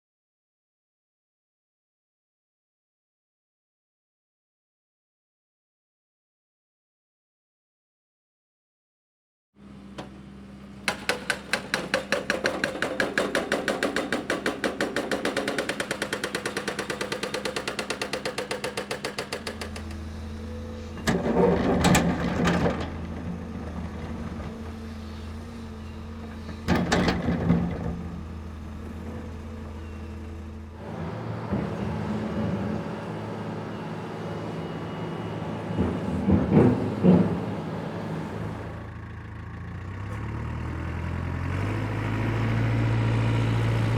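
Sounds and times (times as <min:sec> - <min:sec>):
machinery clanks and scrapes: 0:10.9 - 0:39.0
diesel engine running: 0:14.6 - 0:43.9.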